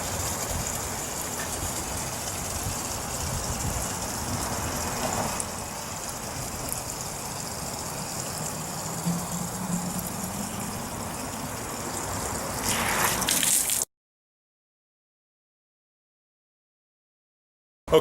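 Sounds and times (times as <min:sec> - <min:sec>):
water running into a tank: 0:00.0 - 0:13.9.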